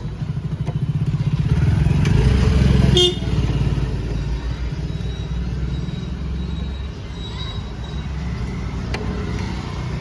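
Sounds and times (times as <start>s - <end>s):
vehicle engine rumbling: 0.0s - 10.0s
horn toot: 2.9s - 3.4s.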